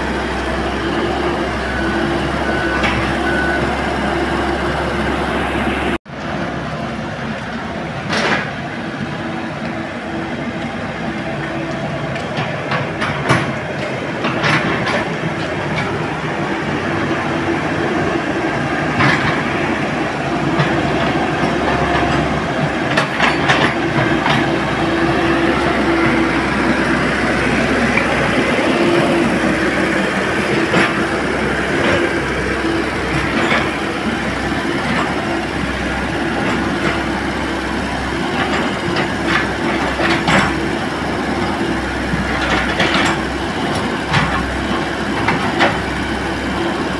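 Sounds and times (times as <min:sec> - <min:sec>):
excavator engine hum: 0:00.0 - 0:46.9
metallic clanks and knocks: 0:20.6 - 0:24.6.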